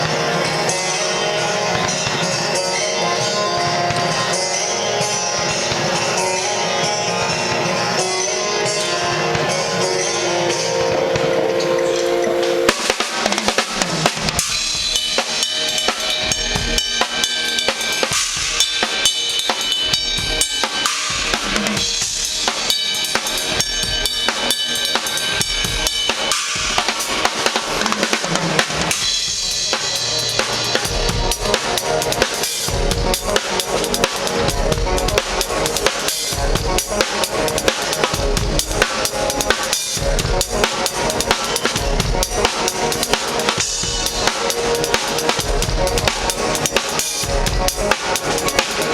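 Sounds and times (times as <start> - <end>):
drum kit playing rapid hits: 0.0 - 48.9.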